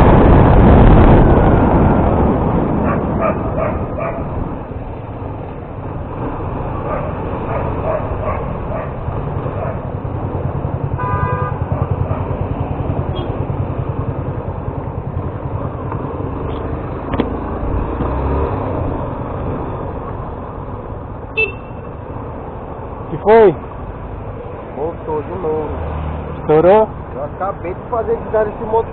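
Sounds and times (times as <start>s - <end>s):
motorcycle engine rumbling: 0.0s - 28.9s
horn toot: 10.9s - 11.8s.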